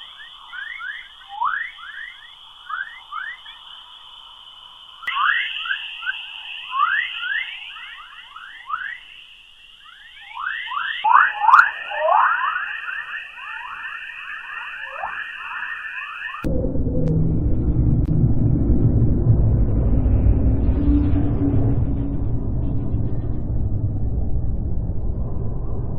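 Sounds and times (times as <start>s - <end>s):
rising whistling chirps: 0.0s - 16.5s
steady high hiss: 0.0s - 16.5s.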